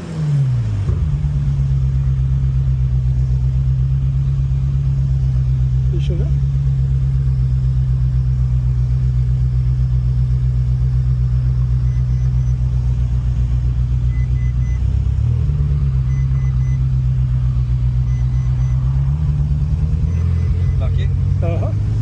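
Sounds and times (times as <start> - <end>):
car engine idling: 0.0 - 22.0
faint short electronic beeps: 11.8 - 12.7, 14.0 - 14.9, 16.0 - 16.9, 18.0 - 18.9, 20.0 - 21.0.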